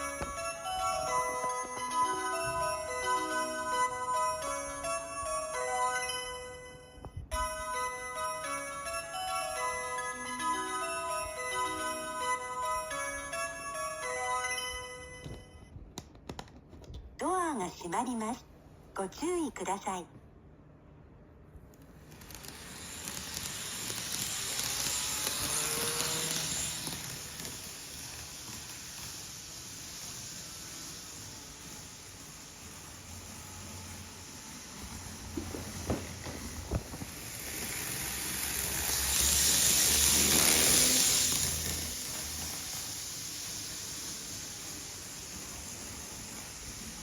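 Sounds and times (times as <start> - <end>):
faint motor whine: 21.7 - 47.0
train wheels on rail: 21.9 - 47.0.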